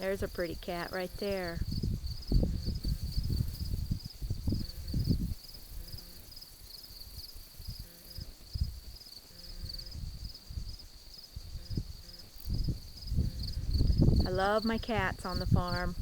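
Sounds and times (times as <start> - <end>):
low microphone rumbles: 0.0 - 6.2, 9.6 - 16.0
insects chirping in pulsing trill: 0.0 - 16.0.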